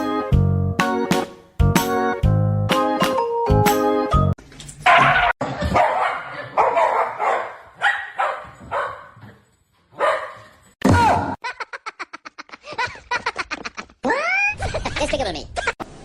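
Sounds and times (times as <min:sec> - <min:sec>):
dog barking and yipping: 0:04.8 - 0:10.8.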